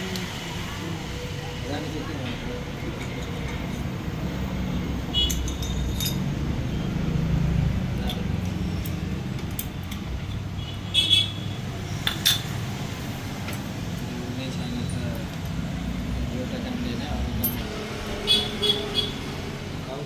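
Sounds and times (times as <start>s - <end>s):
metal clinking taps: 5.2s - 6.4s, 8.0s - 10.5s, 17.4s - 17.7s.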